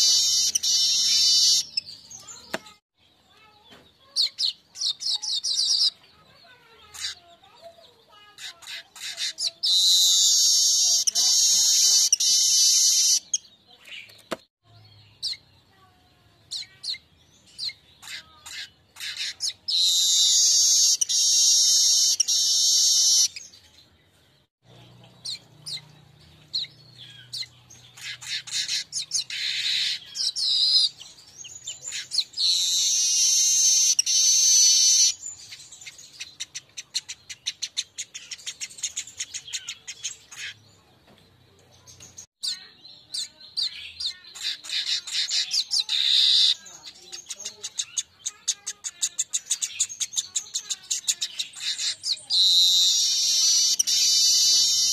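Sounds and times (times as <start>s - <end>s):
bird chirps and ticks: 0.0s - 15.9s, 24.6s - 54.9s.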